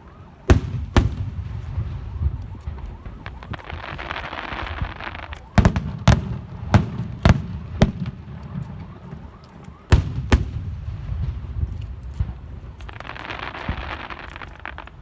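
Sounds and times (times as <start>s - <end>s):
fireworks bangs: 0.0s - 15.0s.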